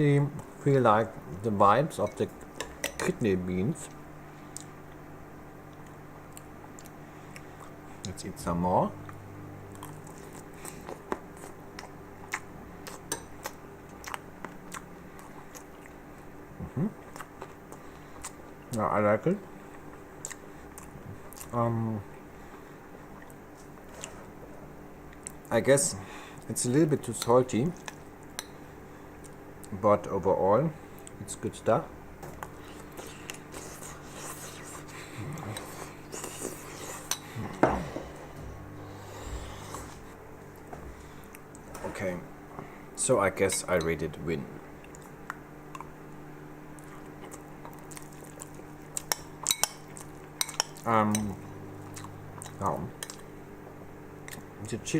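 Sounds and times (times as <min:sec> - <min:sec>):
microwave oven hum: 0:00.0 - 0:54.9
person chewing fries: 0:09.0 - 0:18.8, 0:19.7 - 0:21.6, 0:32.3 - 0:37.5, 0:46.7 - 0:53.4.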